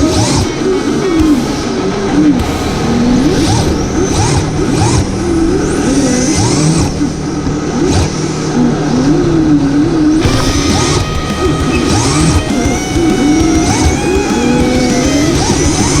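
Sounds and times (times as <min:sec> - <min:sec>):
electric motor whining and revving: 0:03.4 - 0:16.0.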